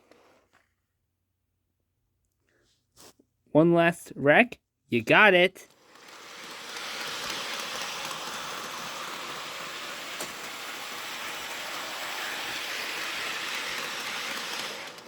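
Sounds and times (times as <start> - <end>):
toy train whirring on track: 5.6 - 15.0.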